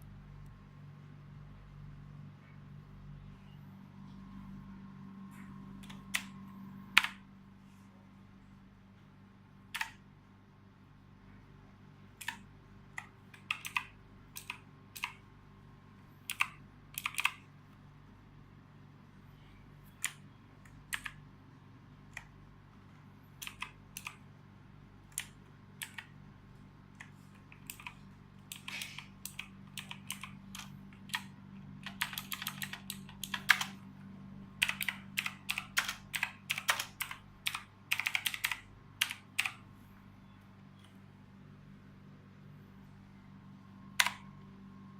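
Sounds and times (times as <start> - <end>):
mechanical keyboard typing: 5.7 - 7.2, 9.7 - 10.0, 12.2 - 15.3, 16.2 - 17.5, 19.9 - 21.2, 23.4 - 24.3, 25.0 - 26.2, 26.9 - 33.8, 34.6 - 39.6, 44.0 - 44.4.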